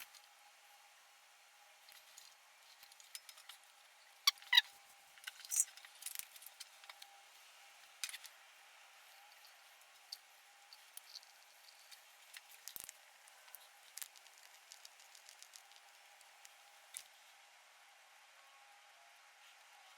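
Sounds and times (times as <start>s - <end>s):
small clicks taps and rustles: 9.3s - 17.1s.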